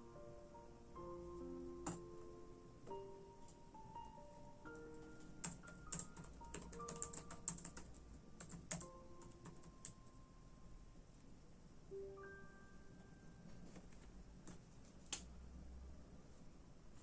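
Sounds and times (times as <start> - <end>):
soft music with held notes: 0.0 - 14.3
computer keyboard typing: 1.8 - 2.0, 4.7 - 10.1.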